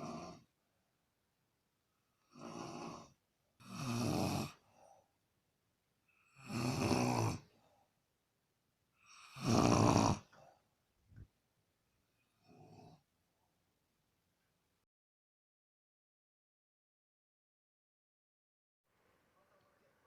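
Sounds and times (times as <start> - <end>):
man snoring: 0.0 - 0.5, 2.2 - 4.6, 6.3 - 7.5, 9.0 - 10.4.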